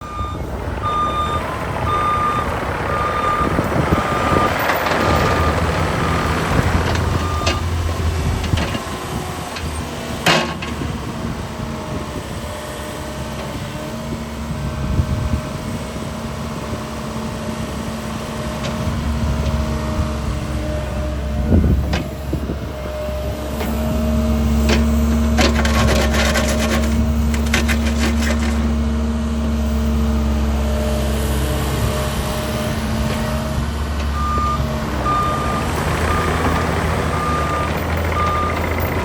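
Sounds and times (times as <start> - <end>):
travel alarm beeping: 0.0 - 5.6
excavator diesel engine running: 0.0 - 39.0.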